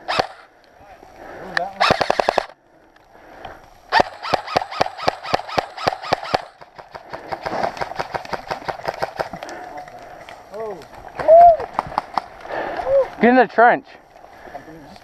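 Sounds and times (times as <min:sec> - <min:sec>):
airsoft guns firing: 0:00.0 - 0:00.5, 0:01.8 - 0:02.6, 0:03.9 - 0:09.5, 0:11.6 - 0:12.4.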